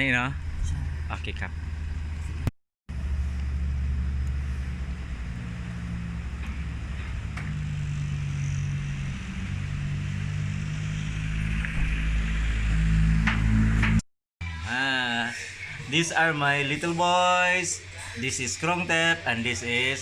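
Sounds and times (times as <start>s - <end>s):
vehicle engine rumbling: 0.0s - 14.0s.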